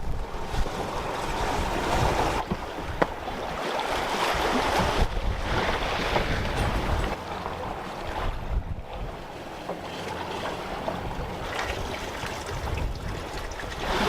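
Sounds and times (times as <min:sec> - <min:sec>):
water rushing along boat hull: 0:00.0 - 0:14.0
wind buffeting microphone: 0:00.0 - 0:14.0.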